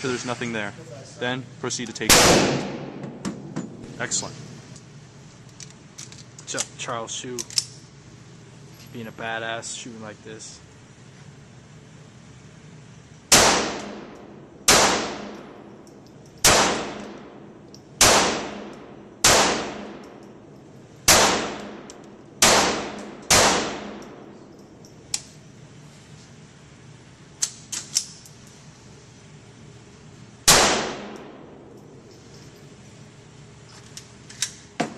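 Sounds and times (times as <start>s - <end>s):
pistol shots: 2.1s - 3.5s, 13.3s - 15.7s, 16.4s - 20.2s, 21.0s - 24.3s, 30.4s - 31.6s.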